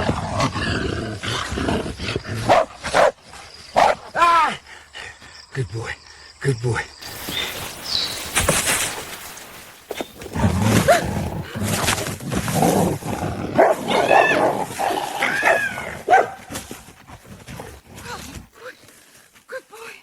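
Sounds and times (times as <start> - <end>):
dog barking: 2.4 - 4.2, 13.6 - 14.4, 15.4 - 16.5.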